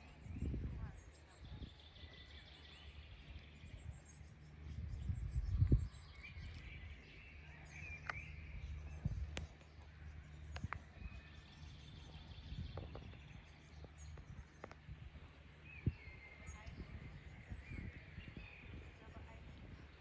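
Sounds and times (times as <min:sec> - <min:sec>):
birds chirping faintly: 0:00.0 - 0:20.0
steady low rumble: 0:00.0 - 0:20.0.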